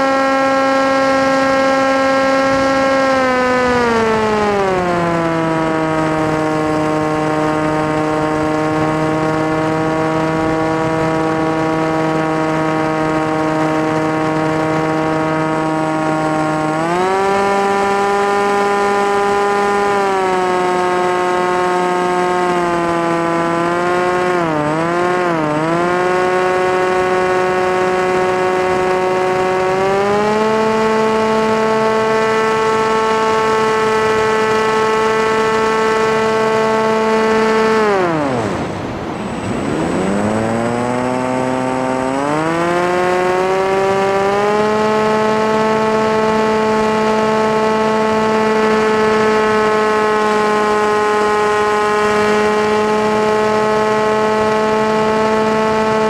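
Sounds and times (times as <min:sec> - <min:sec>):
model aircraft motor droning: 0:00.0 - 0:56.0.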